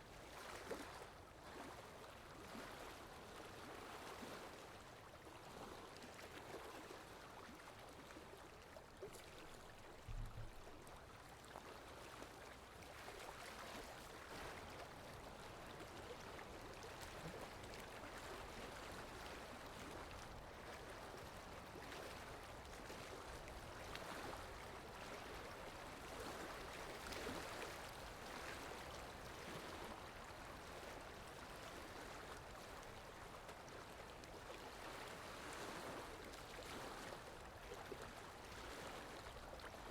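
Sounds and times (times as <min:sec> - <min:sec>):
faint wash of water: 0:00.0 - 0:39.9
low thump: 0:10.1 - 0:10.6.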